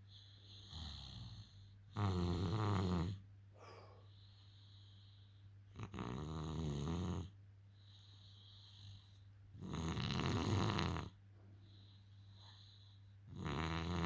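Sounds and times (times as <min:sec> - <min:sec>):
faint low hum: 0:00.0 - 0:14.0
soft breathing: 0:03.5 - 0:05.7, 0:07.6 - 0:09.6, 0:11.4 - 0:13.4
person snoring: 0:13.3 - 0:14.0.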